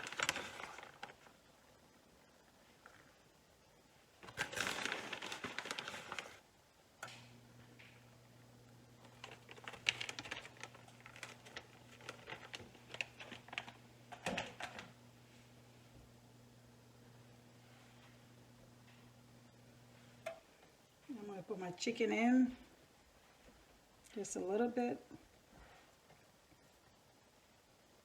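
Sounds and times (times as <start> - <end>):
plastic bag rustling: 0.0 - 1.4, 4.2 - 6.4, 9.0 - 14.9
low steady hum: 0.0 - 25.5.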